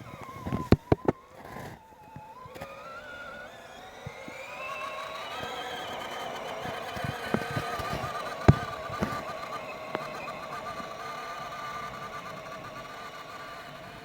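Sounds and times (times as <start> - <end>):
rc truck motor whining: 0.0 - 14.0.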